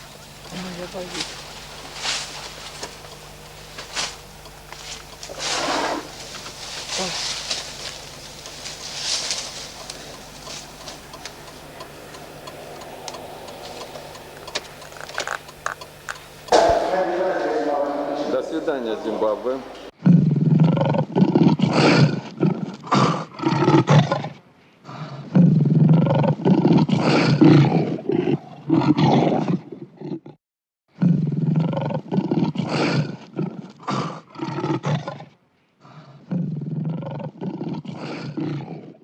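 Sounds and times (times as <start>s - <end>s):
lion roaring: 5.3s - 15.8s, 17.8s - 30.4s, 31.0s - 39.0s.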